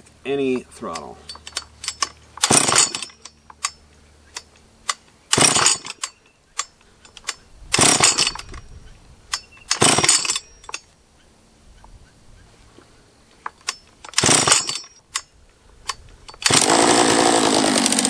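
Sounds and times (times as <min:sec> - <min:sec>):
chainsaw engine bursts: 0:00.9 - 0:08.5, 0:09.7 - 0:10.8, 0:13.7 - 0:15.0, 0:16.3 - 0:18.0.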